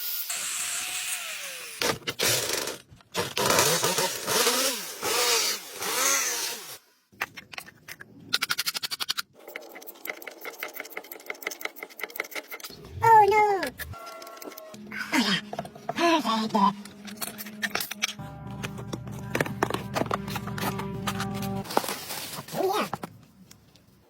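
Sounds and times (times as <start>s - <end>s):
power tool on metal: 0.0s - 6.8s.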